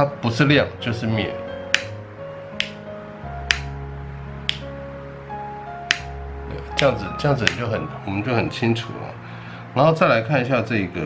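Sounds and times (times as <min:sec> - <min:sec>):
background music with bass line: 0:00.0 - 0:10.0
sharp snap-like clicks: 0:01.7 - 0:02.0, 0:02.6 - 0:02.8, 0:03.5 - 0:03.8, 0:04.5 - 0:04.7, 0:05.9 - 0:06.1, 0:06.8 - 0:07.6.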